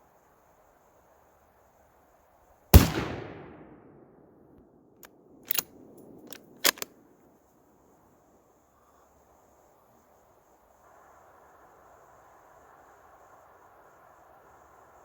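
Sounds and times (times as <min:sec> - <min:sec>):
rifle bolt clicks: 0:02.8 - 0:03.6, 0:05.5 - 0:05.7, 0:06.3 - 0:06.9
rifle shot: 0:02.8 - 0:04.0.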